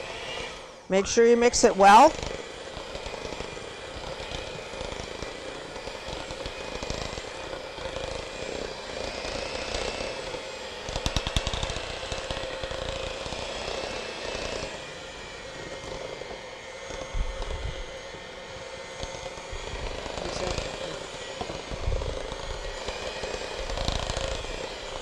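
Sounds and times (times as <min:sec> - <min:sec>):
electric hand mixer running: 0:00.0 - 0:25.0.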